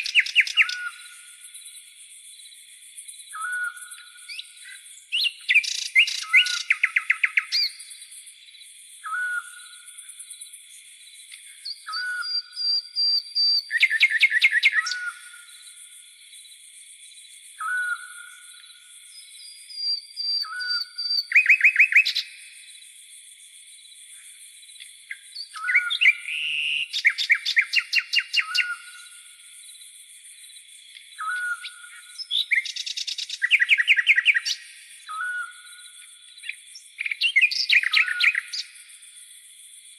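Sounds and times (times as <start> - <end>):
crickets droning: 0.0 - 39.9
bird hooked whistles: 5.1 - 7.7, 25.4 - 28.9, 37.0 - 38.6.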